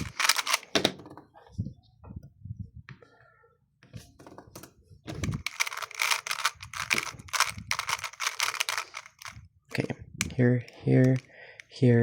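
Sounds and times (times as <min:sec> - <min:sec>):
puzzle cube clacking turns: 0:00.0 - 0:00.9, 0:05.1 - 0:09.9, 0:10.7 - 0:11.3.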